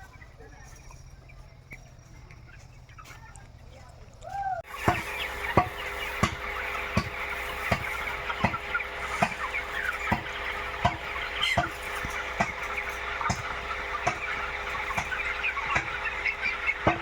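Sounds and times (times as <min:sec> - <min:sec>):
chickens chattering: 0:00.0 - 0:17.0
steady hum: 0:04.7 - 0:17.0.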